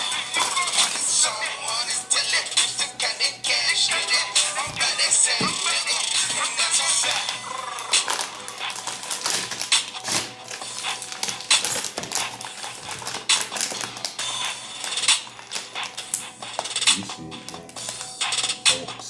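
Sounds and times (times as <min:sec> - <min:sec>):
packaging crinkling and clicking: 0:00.0 - 0:01.3, 0:06.7 - 0:18.1
background music: 0:00.0 - 0:19.0.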